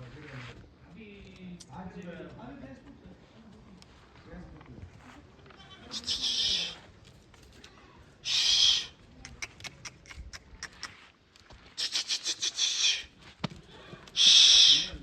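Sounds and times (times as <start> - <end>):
goat bleating hoarsely: 5.5 - 6.8.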